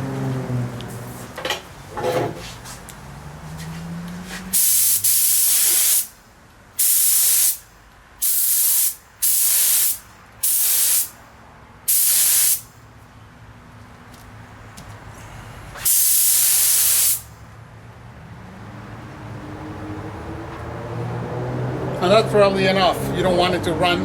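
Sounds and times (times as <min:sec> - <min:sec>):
sprayer hissing bursts: 0:04.5 - 0:06.2, 0:06.8 - 0:11.2, 0:11.9 - 0:12.7, 0:15.8 - 0:17.4.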